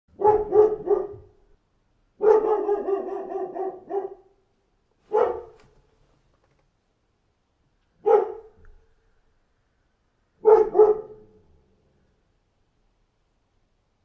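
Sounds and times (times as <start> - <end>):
dog barking: 0.1 - 1.4, 2.2 - 4.4, 5.1 - 5.8, 8.0 - 8.6, 10.4 - 11.4.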